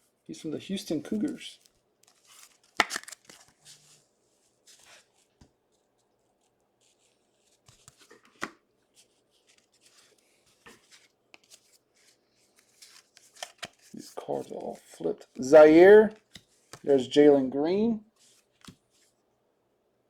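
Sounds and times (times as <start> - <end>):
trading cards rustling and clicking: 1.1 - 3.9, 4.7 - 16.9
sharp card tap: 2.8 - 3.4.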